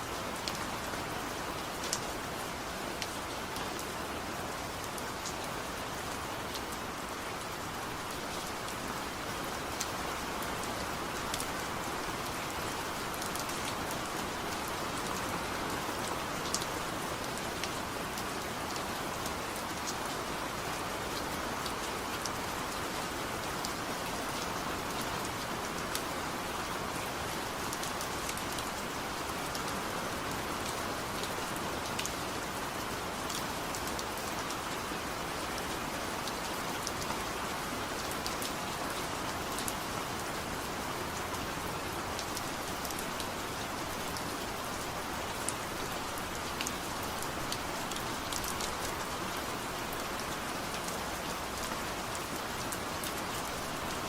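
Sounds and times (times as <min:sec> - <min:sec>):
light rain hissing: 0:37.4 - 0:54.0.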